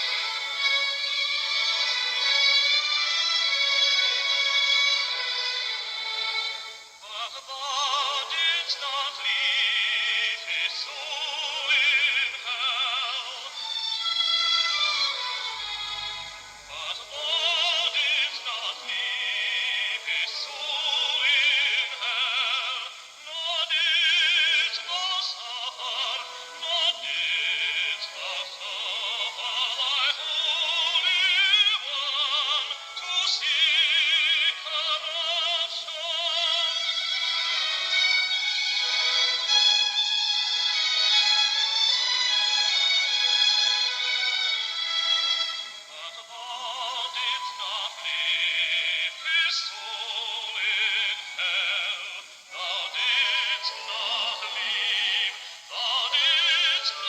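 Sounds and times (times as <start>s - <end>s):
high vibrato melody music: 0.0s - 24.1s
background music: 0.0s - 57.0s
operatic high voice singing: 0.0s - 57.0s.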